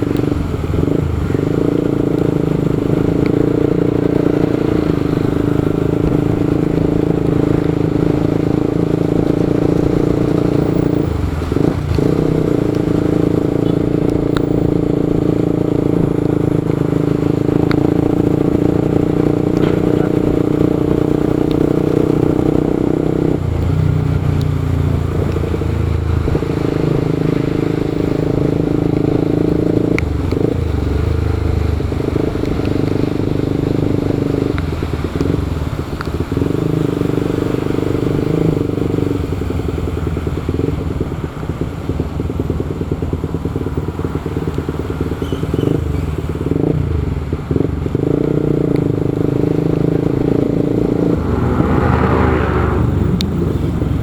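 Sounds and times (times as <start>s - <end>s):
motorcycle engine running: 0.0s - 54.0s.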